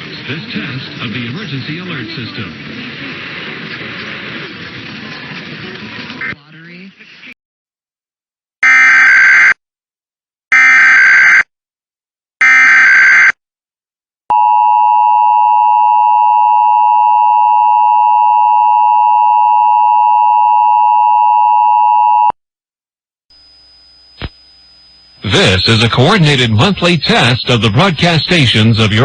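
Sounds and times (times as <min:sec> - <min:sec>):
digital data tone bursts: 0:24.6 - 0:29.0.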